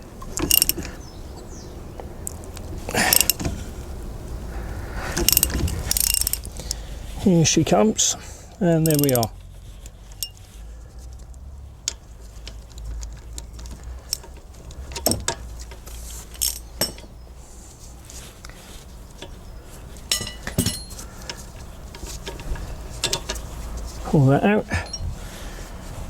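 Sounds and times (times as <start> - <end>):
metal tools clinking: 0.4 - 1.0, 3.0 - 3.5, 5.2 - 6.7, 8.6 - 9.4, 10.1 - 10.5, 11.9 - 17.2, 19.1 - 24.0, 24.7 - 25.1
metal knocks: 20.1 - 21.0.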